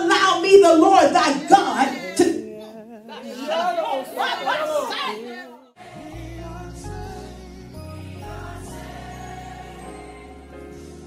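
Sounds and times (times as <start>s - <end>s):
soft slow background music: 5.8s - 11.0s.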